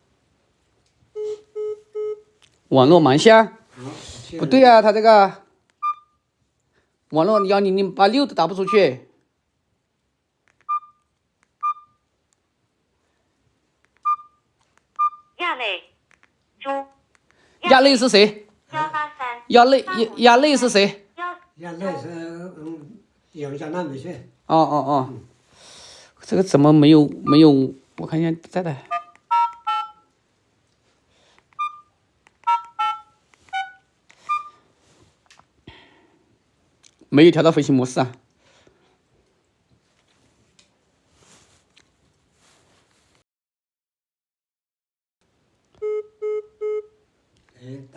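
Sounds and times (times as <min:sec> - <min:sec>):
mobile phone beeps: 0:01.2 - 0:02.3, 0:05.8 - 0:06.2, 0:07.3 - 0:07.6, 0:10.7 - 0:11.0, 0:11.6 - 0:12.0, 0:14.0 - 0:14.4, 0:15.0 - 0:15.4, 0:27.2 - 0:27.5, 0:28.9 - 0:30.0, 0:31.6 - 0:34.6, 0:45.8 - 0:46.9.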